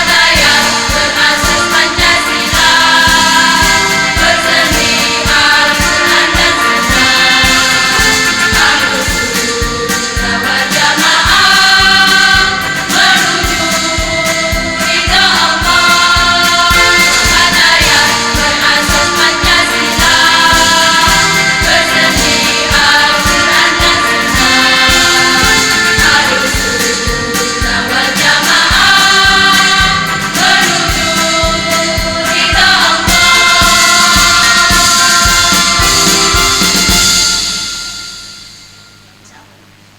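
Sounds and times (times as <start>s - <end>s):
women's choir singing: 0.0s - 38.1s
music with steady beat: 0.0s - 39.9s.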